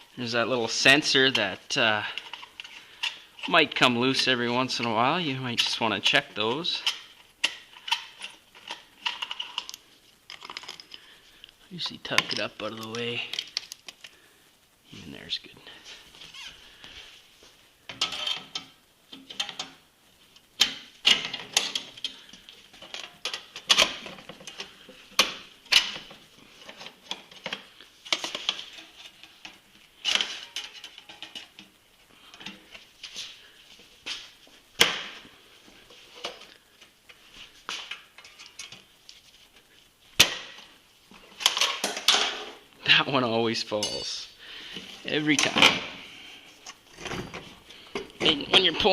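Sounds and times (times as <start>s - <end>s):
metal tools and parts clinking: 6.7s - 11.1s, 17.9s - 19.8s, 21.0s - 31.7s, 43.7s - 44.3s.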